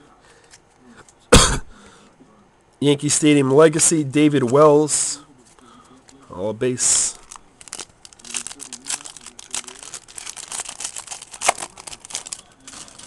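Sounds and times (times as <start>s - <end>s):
wrapper crinkling and tearing: 6.8s - 13.0s.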